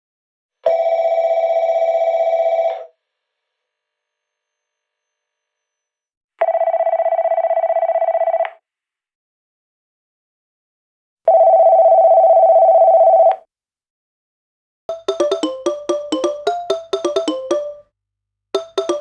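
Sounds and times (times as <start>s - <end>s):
phone ringtone warbling ring: 14.9s - 17.8s, 18.6s - 19.0s.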